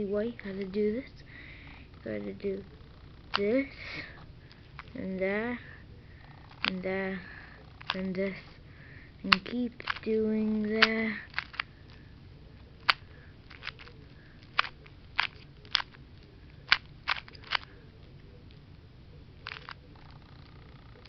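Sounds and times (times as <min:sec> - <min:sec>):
puzzle cube clicking: 0:01.9 - 0:05.6, 0:06.2 - 0:08.5, 0:09.2 - 0:12.0, 0:12.6 - 0:18.6, 0:19.4 - 0:21.0.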